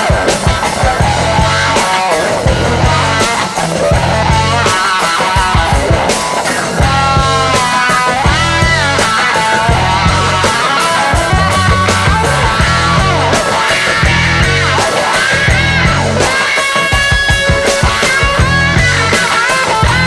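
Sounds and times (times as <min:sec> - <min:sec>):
rock music: 0:00.0 - 0:20.0.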